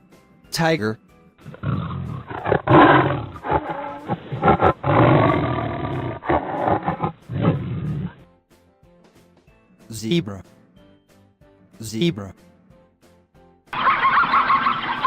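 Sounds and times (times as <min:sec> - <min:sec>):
tiger roaring: 0:01.4 - 0:08.2.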